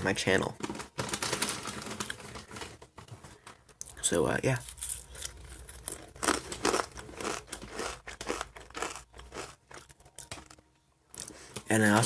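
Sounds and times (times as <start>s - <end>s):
corn chips being chewed: 4.6s - 11.6s.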